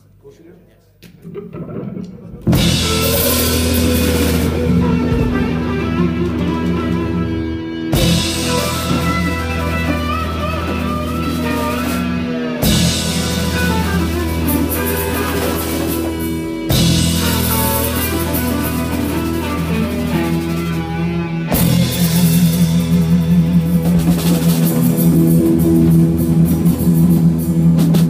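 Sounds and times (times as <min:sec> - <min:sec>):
band playing a groove: 0:01.0 - 0:28.0.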